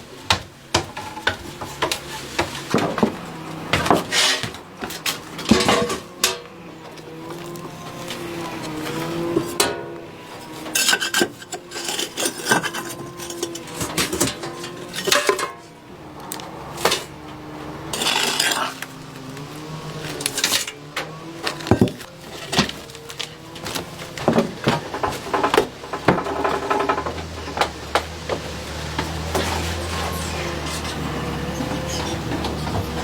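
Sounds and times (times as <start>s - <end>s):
metal scraping: 1.0s - 33.0s
metal cookware clinking: 5.5s - 6.6s, 9.0s - 15.7s, 17.9s - 19.2s.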